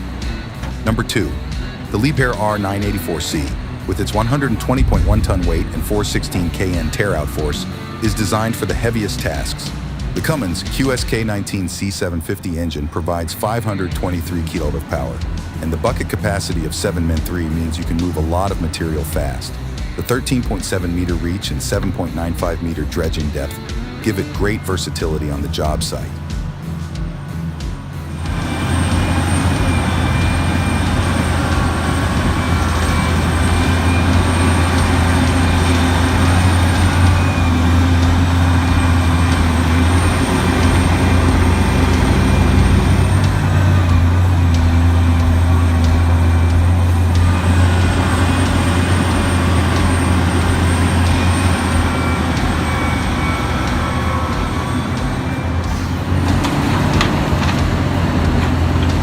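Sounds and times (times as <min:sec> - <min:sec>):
knocks and clanks: 0:00.0 - 0:01.9, 0:26.1 - 0:59.0
diesel engine droning: 0:00.0 - 0:59.0.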